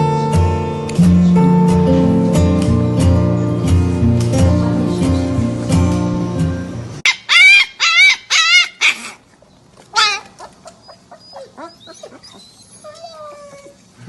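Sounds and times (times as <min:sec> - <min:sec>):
animal high wavering cries: 0:07.1 - 0:09.2, 0:10.0 - 0:13.8.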